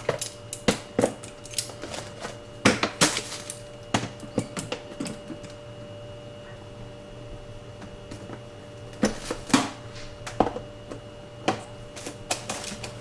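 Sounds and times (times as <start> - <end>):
plastic and metal parts clattering: 1.0 - 5.2.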